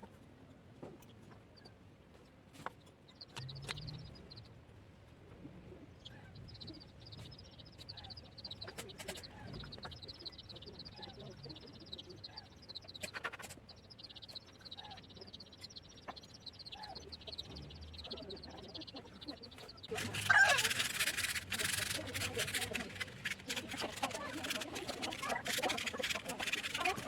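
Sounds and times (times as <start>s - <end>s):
small animals chirping: 3.1s - 4.5s, 6.0s - 27.0s
quick clicks: 19.6s - 27.0s.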